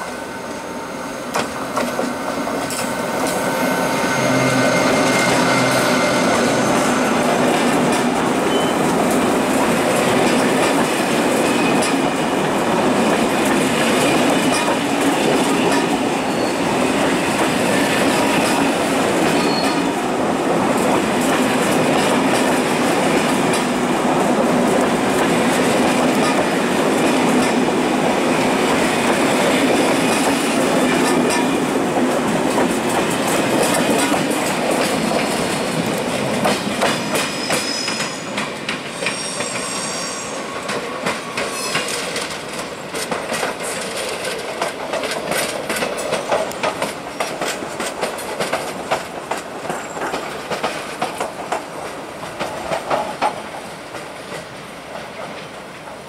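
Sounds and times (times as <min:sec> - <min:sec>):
train wheel-on-rail rumble: 0:00.0 - 0:56.0
wheel squeal: 0:02.7 - 0:07.3, 0:08.4 - 0:08.9, 0:16.2 - 0:16.9, 0:19.3 - 0:19.9, 0:37.0 - 0:40.6, 0:41.4 - 0:42.2.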